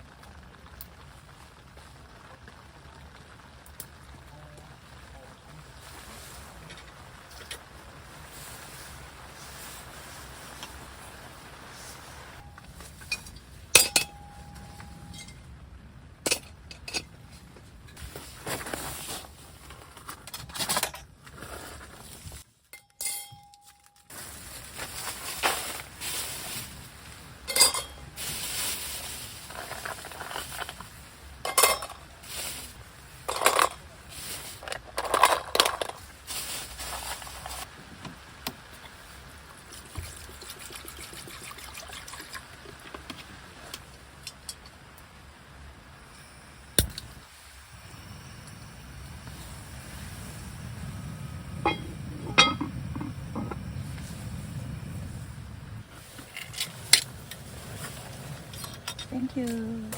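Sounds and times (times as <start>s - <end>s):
steady background hiss: 2.8s - 22.6s, 23.5s - 40.5s
dishes and utensils clinking: 12.4s - 15.4s, 22.8s - 24.1s, 27.5s - 28.1s, 31.4s - 32.0s, 51.7s - 53.6s.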